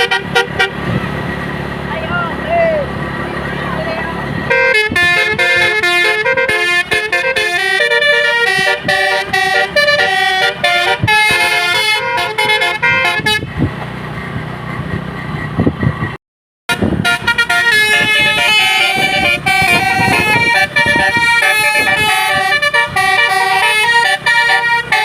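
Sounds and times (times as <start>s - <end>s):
musical air horn playing a tune: 0.0s - 0.8s, 4.5s - 13.5s, 16.7s - 25.0s.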